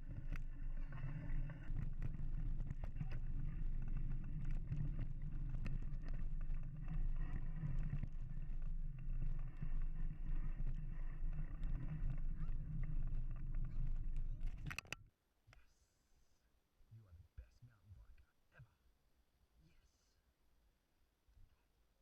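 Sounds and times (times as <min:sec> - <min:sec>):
bike clicks and rattles: 0:00.0 - 0:15.0.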